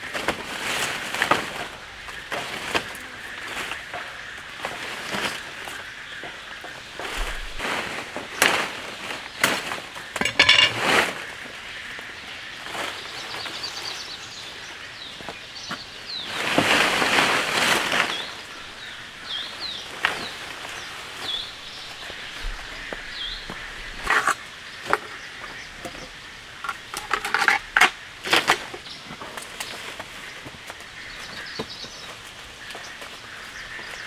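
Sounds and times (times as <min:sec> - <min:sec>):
rustling handling noise: 0:00.0 - 0:34.0
steady outdoor hiss: 0:00.0 - 0:34.0
rattle of clinks: 0:10.2 - 0:10.9.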